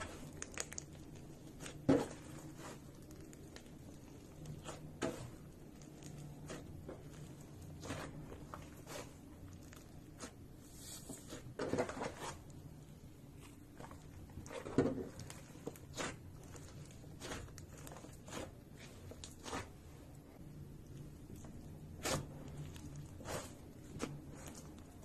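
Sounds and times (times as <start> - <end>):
slime sticky pops and crackles: 0.2 - 1.2.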